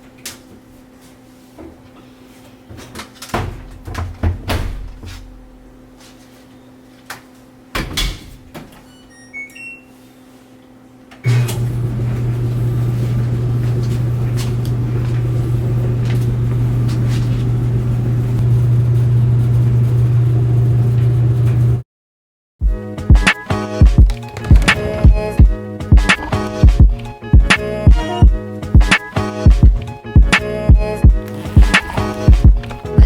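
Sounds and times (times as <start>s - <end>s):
microwave running hum: 0.0s - 21.8s.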